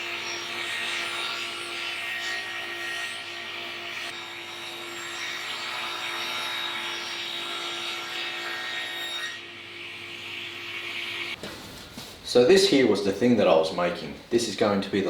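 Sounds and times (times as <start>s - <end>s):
power tool cutting wood: 0.0s - 11.4s.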